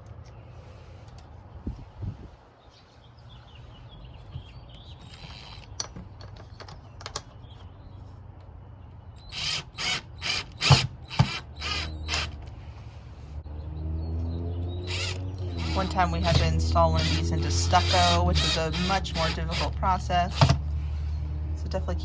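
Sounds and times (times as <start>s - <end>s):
power drill pulsing: 9.2s - 12.4s, 14.8s - 21.1s.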